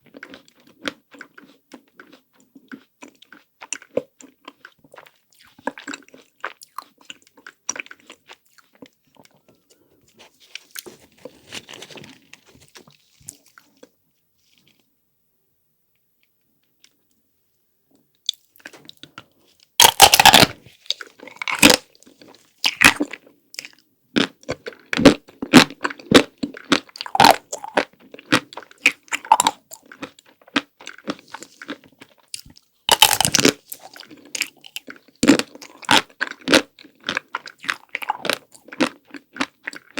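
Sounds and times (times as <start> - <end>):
crunchy chewing: 0.1 - 14.8, 18.3 - 39.9
crunching bite of chocolate shell: 19.8 - 31.8, 32.9 - 39.9.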